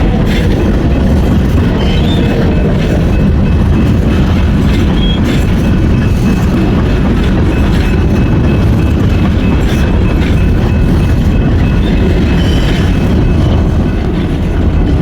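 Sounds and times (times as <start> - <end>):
train wheels rumbling on rail: 0.0 - 15.0
wheel squeal: 1.6 - 2.6, 4.7 - 5.6, 9.7 - 13.6.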